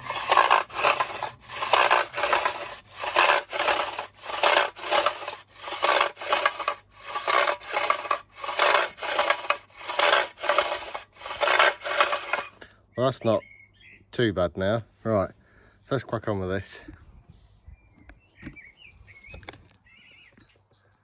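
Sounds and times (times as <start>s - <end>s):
mower part rasping back and forth: 0.0s - 12.6s.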